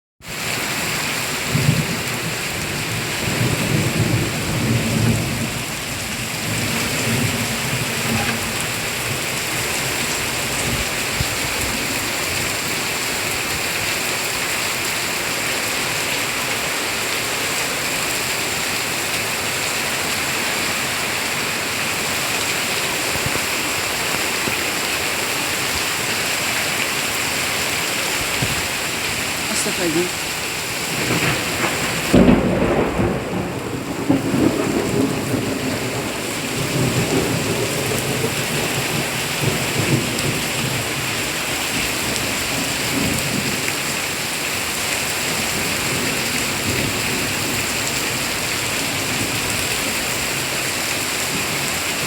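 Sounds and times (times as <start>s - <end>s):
heavy rain pouring: 0.2s - 52.0s
thunder rumbling: 30.9s - 41.2s.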